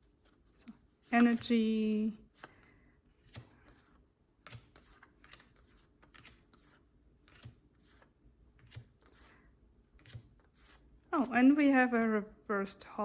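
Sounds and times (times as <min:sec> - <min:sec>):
trading cards sliding and flipping: 0:00.0 - 0:01.7, 0:02.3 - 0:09.4, 0:10.0 - 0:10.9.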